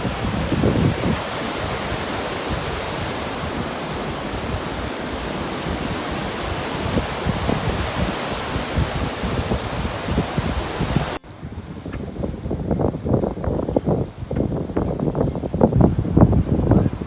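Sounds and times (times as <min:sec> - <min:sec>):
ocean surf rushing: 0:00.0 - 0:11.5
wind buffeting microphone: 0:00.0 - 0:17.0.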